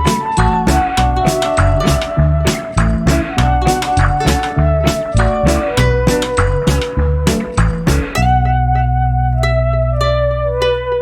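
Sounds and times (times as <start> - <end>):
upbeat background music with drums: 0.0 - 8.3.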